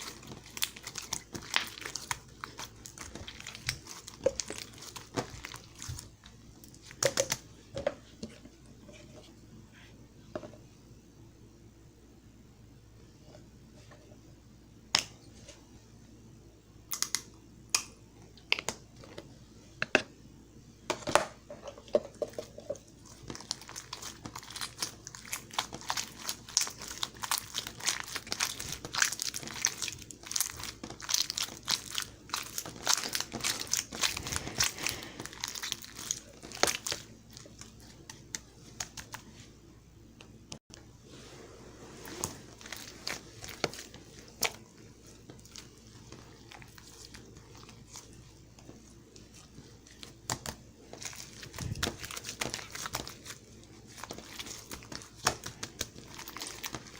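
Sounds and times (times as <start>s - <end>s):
slime squishing and popping: 0.0s - 6.2s, 23.0s - 39.2s, 42.2s - 56.9s.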